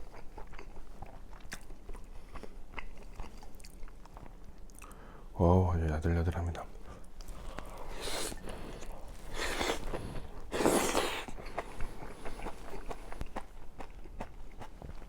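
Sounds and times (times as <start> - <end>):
wet chewing clicks: 0.0 - 5.0, 7.2 - 15.0
breath or slurping rushes: 7.3 - 13.2.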